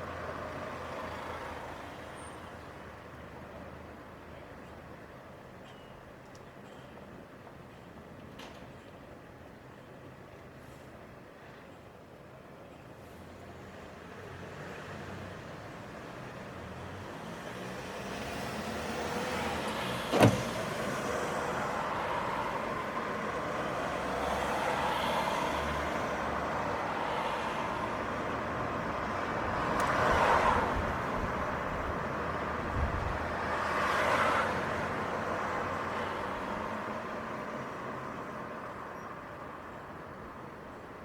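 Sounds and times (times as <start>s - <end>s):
cars passing: 13.6s - 38.6s.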